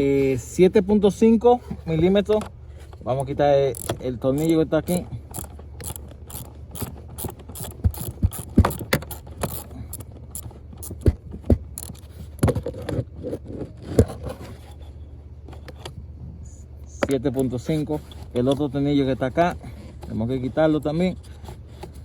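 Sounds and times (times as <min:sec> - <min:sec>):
low steady hum: 0:00.0 - 0:22.0
ratchet wrench clicking: 0:03.2 - 0:11.1, 0:11.7 - 0:12.0.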